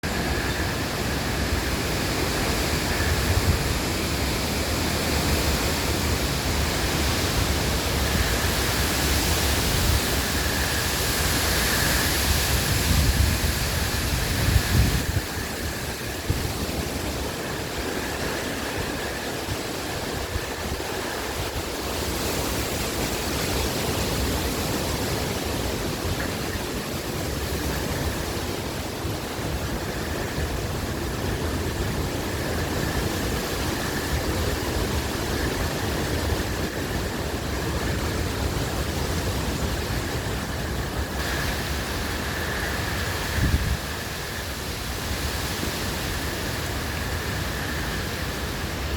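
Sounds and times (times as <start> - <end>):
strong wind rushing: 0.0 - 48.9
wind gusts buffeting microphone: 0.0 - 48.9.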